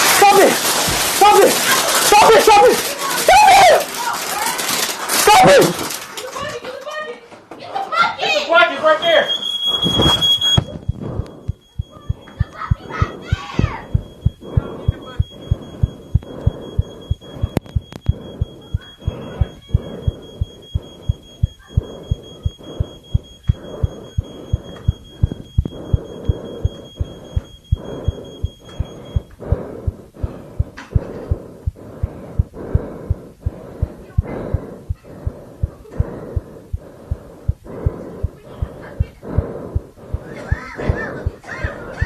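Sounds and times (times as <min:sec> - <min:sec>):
high-pitched ringing tone: 0:09.0 - 0:29.4
heartbeat thumps: 0:09.3 - 0:42.0
low hum: 0:09.4 - 0:40.2.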